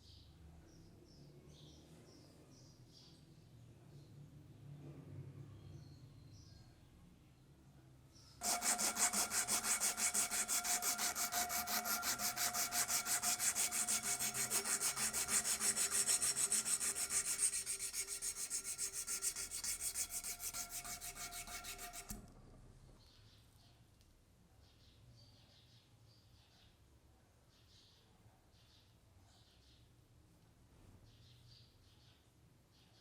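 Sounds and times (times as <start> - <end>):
cleaver blade scraping on sharpener: 8.4 - 22.3.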